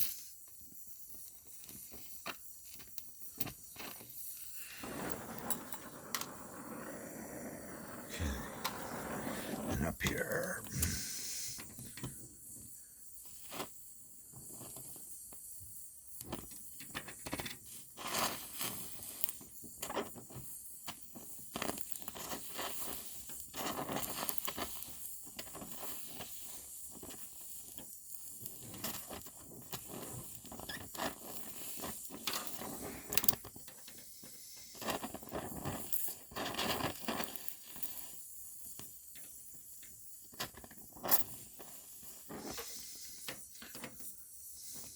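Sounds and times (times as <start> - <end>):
weld crackles and pops: 0.0 - 6.7, 13.2 - 44.2
gas welding torch hissing: 0.0 - 13.8, 17.7 - 36.3, 41.5 - 44.9.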